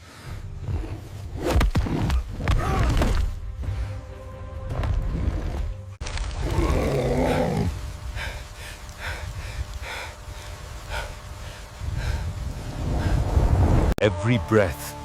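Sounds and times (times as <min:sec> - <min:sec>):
low rumble: 0:06.3 - 0:14.0
animal-like roar: 0:06.4 - 0:07.8.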